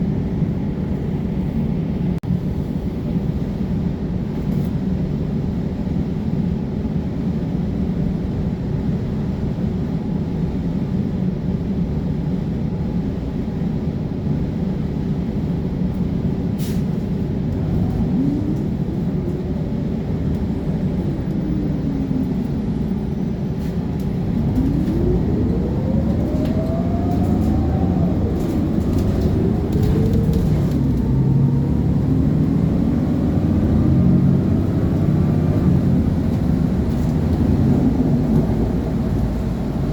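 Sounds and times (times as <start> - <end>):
bus engine shifting gears: 14.4 - 39.9.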